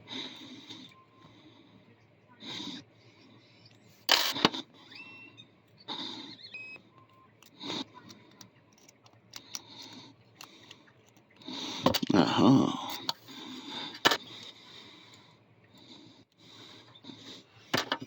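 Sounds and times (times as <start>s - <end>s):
lock pick clicks and scrapes: 8.7s - 11.3s.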